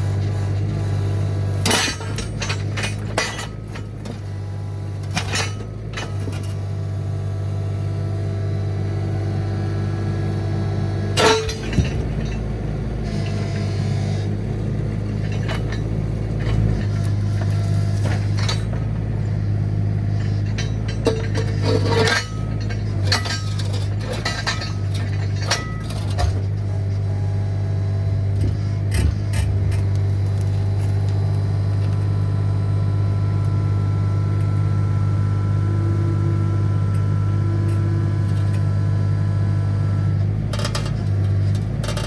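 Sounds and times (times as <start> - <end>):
excavator engine running: 0.0 - 42.0.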